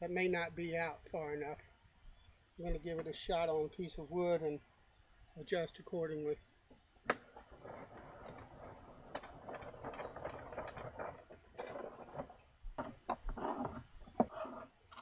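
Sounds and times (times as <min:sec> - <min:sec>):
spokeshave rasping on wood: 0:12.9 - 0:15.0.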